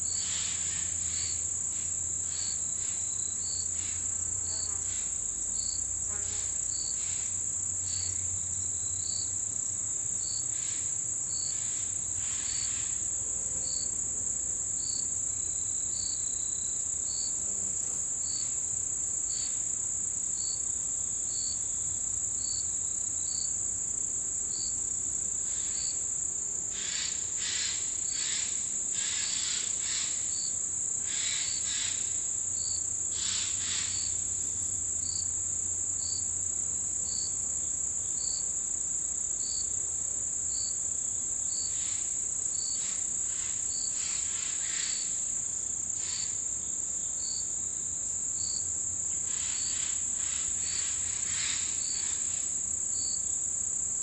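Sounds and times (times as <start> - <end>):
insects high-pitched ringing trill: 0.0 - 54.0
short insect chirp: 10.2 - 13.9, 24.5 - 38.5, 40.5 - 54.0.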